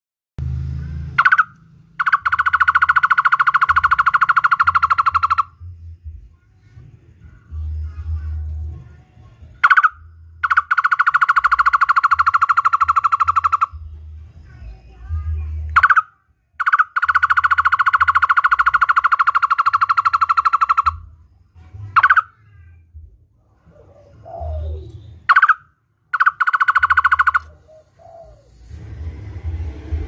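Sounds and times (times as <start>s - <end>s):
barbet rattling call: 1.1s - 5.6s, 9.6s - 13.8s, 15.8s - 21.1s, 21.9s - 22.4s, 25.2s - 28.6s.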